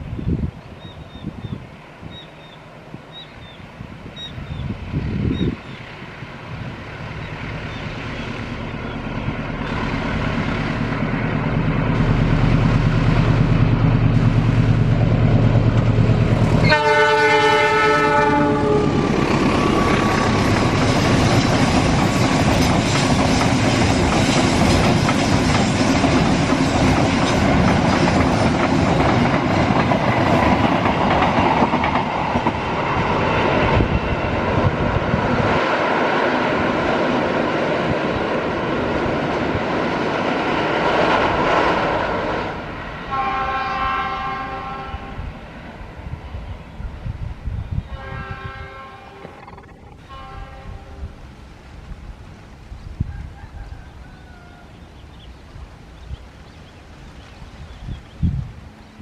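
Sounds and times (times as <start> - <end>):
diesel locomotive engine hum: 0.0 - 59.0
train horn chord: 16.5 - 19.1, 43.1 - 45.3, 47.9 - 49.3, 50.0 - 51.2
train wheels clattering over rails: 18.1 - 42.5.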